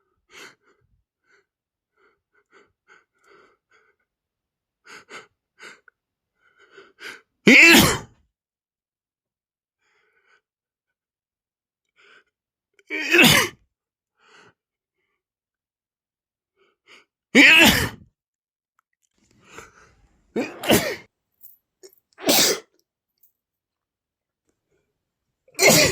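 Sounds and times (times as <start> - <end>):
man sneezing: 7.5 - 8.1, 13.0 - 13.6, 17.4 - 18.0, 20.4 - 21.0, 22.2 - 22.7, 25.6 - 25.9
faint quick breaths: 19.2 - 20.3.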